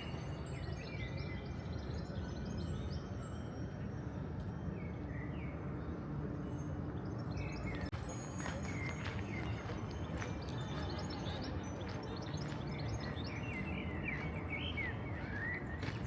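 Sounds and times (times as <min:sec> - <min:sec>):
low rumble of city traffic: 0:00.0 - 0:16.0
small birds chirping: 0:04.7 - 0:16.0.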